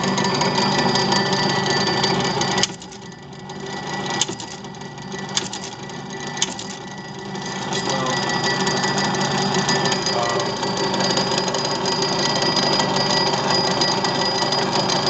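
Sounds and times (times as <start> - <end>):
binding punch motor running: 0.0 - 15.0
sharp clicks: 5.3 - 5.8.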